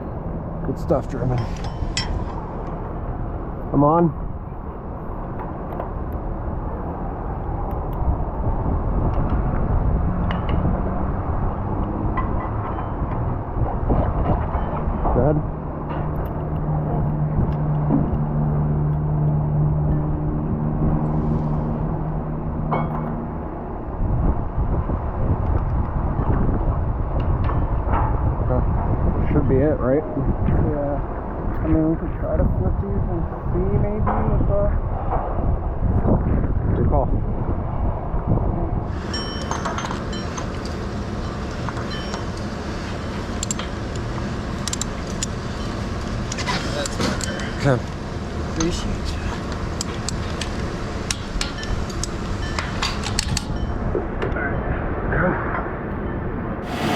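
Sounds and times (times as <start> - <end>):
rough wash of noise: 0.0 - 4.1, 56.6 - 56.9
hiss: 56.6 - 56.9.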